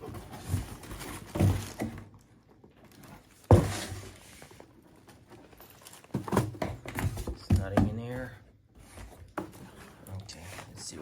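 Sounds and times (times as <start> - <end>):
cardboard box rustling: 0.0 - 2.2, 2.8 - 8.2.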